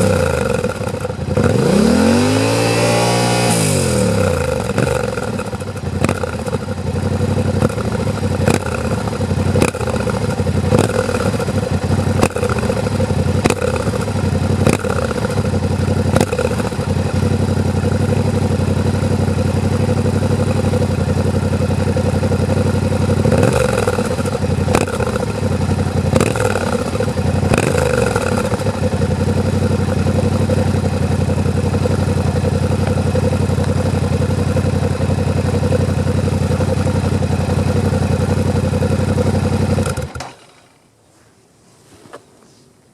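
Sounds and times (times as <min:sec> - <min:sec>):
engine revving: 0:00.0 - 0:17.4, 0:22.4 - 0:30.9, 0:34.4 - 0:40.3
motorcycle engine idling: 0:00.0 - 0:40.2.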